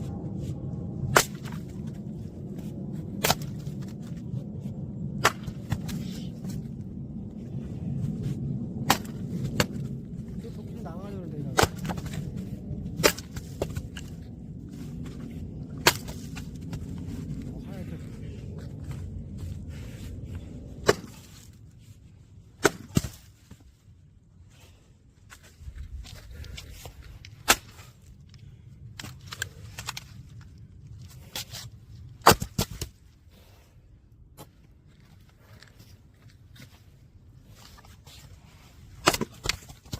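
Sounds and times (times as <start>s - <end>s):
low steady machine rumble: 0.0s - 32.3s
wood cracking as it splits: 1.0s - 2.0s, 3.2s - 4.2s, 8.8s - 9.9s, 11.4s - 14.2s, 15.1s - 16.9s, 32.2s - 33.0s, 39.0s - 39.9s.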